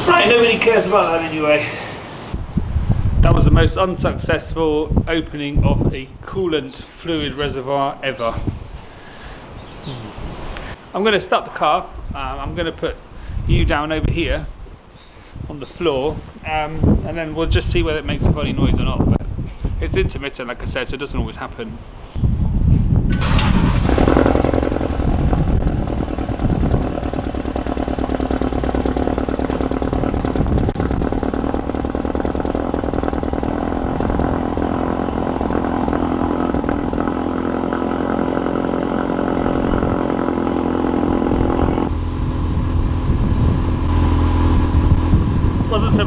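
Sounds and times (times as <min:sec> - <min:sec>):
car engine fast idle: 0:23.2 - 0:25.1.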